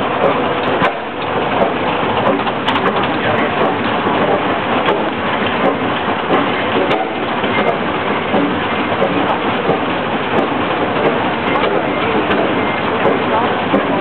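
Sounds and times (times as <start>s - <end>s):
sawmill running: 0.0s - 14.0s.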